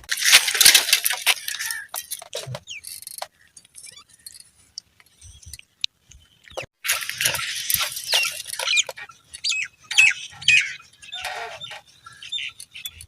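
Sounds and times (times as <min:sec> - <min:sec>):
rustling and sharp clicks: 0:00.0 - 0:09.5.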